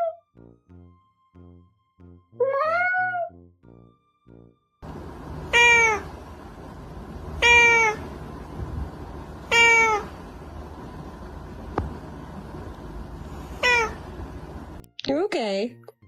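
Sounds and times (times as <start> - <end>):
cat meowing: 2.4 - 3.3, 5.5 - 6.1, 7.4 - 8.0, 9.5 - 10.1, 13.5 - 14.0.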